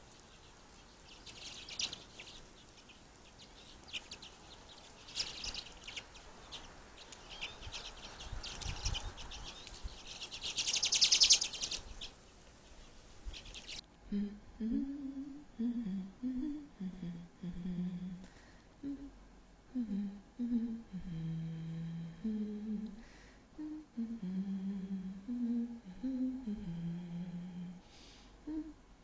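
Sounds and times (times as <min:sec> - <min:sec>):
person breathing: 0:14.1 - 0:19.0, 0:19.8 - 0:28.8
person humming: 0:14.1 - 0:23.0, 0:23.6 - 0:27.8, 0:28.4 - 0:28.8.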